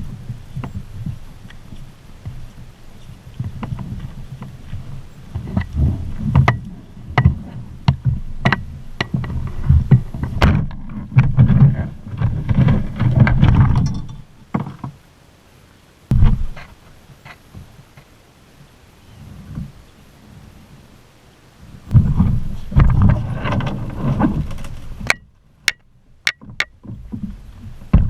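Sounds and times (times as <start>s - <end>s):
rumbling handling noise: 0.0s - 15.0s, 21.9s - 28.0s
water noise: 0.0s - 28.0s
heavy thump: 16.1s - 16.7s.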